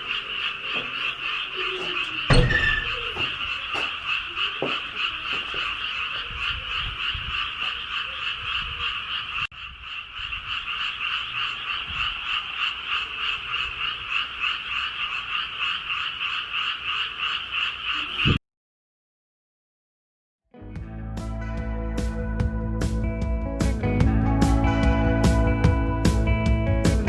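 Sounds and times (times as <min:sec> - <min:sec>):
chorus of frogs croaking: 0:00.0 - 0:18.4.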